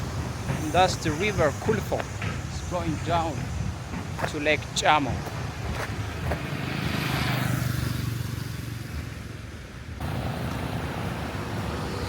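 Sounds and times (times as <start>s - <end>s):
outdoor rumble: 0.0s - 12.0s
vehicle passing: 5.3s - 9.4s, 10.0s - 12.0s.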